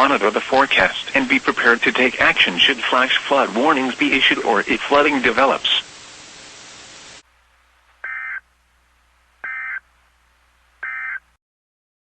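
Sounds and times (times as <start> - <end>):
steady radio hiss: 0.0 - 11.4
digital data bursts: 8.0 - 8.4, 9.4 - 9.8, 10.8 - 11.2.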